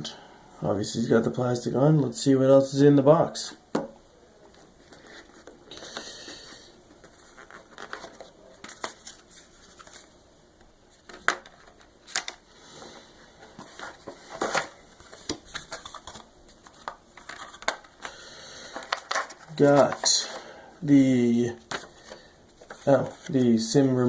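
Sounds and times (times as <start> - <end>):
packaging rustling and scraping: 4.6 - 10.1, 10.9 - 20.5.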